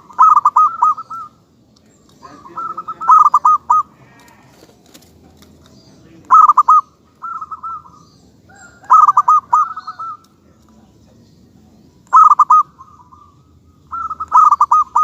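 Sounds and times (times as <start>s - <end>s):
dove cooing: 0.0s - 1.4s, 2.2s - 5.1s, 6.3s - 10.3s, 12.1s - 15.0s.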